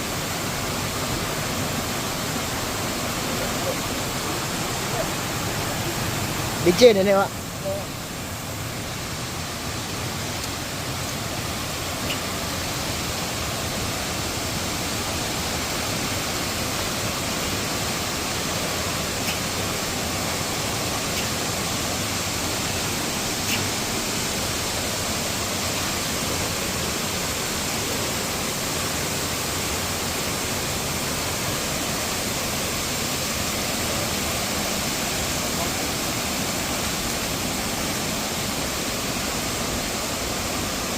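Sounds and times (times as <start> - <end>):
waterfall rushing: 0.0 - 40.9
faint ticks: 19.2 - 19.5, 21.1 - 21.4.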